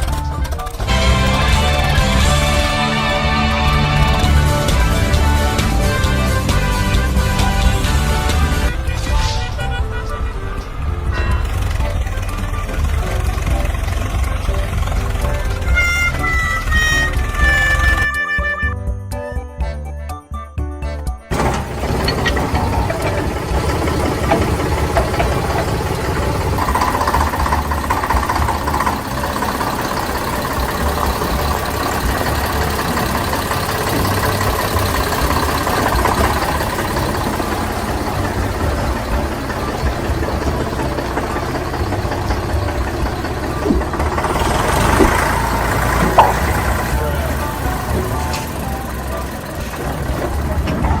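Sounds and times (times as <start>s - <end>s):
small rattly motor running: 21.3s - 51.0s.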